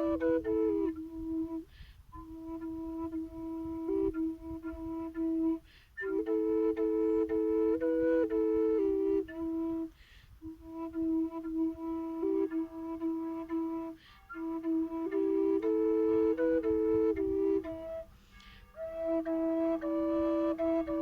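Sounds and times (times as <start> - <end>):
drone flute playing slow tune: 0.0 - 21.0.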